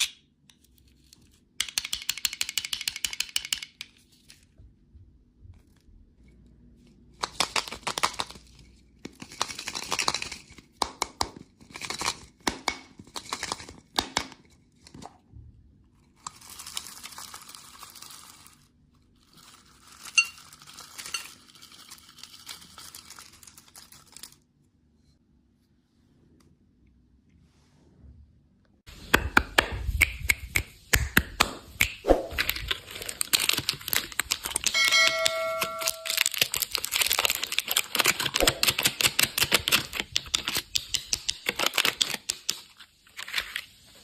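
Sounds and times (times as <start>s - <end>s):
candy wrapper tearing: 16.2s - 24.4s, 32.3s - 34.8s, 35.8s - 43.9s
packaging rustling: 32.2s - 34.8s, 35.6s - 40.7s.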